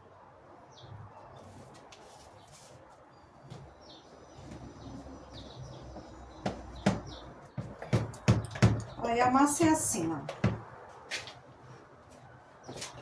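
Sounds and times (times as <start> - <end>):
birds chirping: 3.2 - 10.8.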